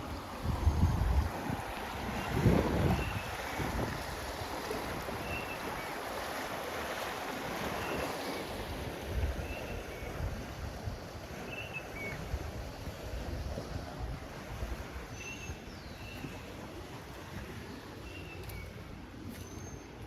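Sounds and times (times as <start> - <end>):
river water rushing: 0.0 - 10.1.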